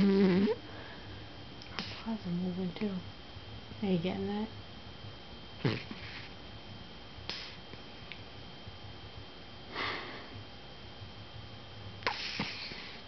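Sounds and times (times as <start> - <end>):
dog snoring: 0.0 - 0.6, 5.6 - 6.3, 12.0 - 13.0.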